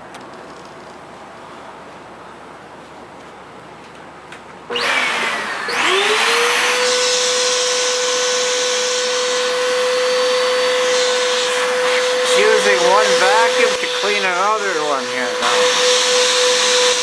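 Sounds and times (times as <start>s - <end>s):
vacuum cleaner motor whine: 4.7s - 17.0s.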